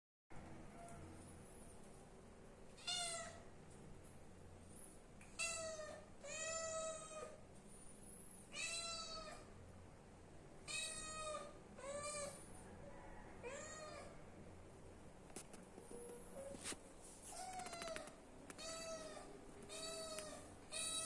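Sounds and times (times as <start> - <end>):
kitten meowing: 17.4 - 21.0.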